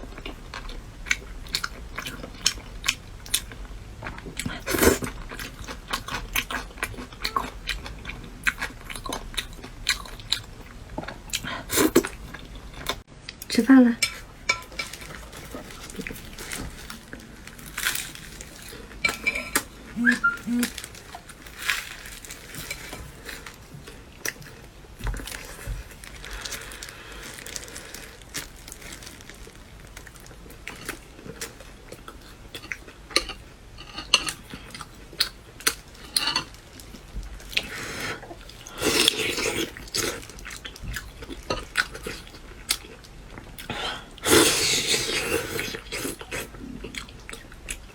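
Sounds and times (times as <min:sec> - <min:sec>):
utensils clinking against plates: 0:19.0 - 0:20.4.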